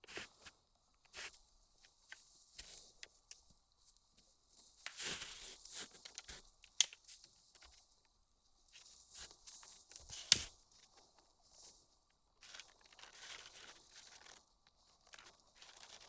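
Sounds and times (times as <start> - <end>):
crunching and rustling: 12.4 - 16.0.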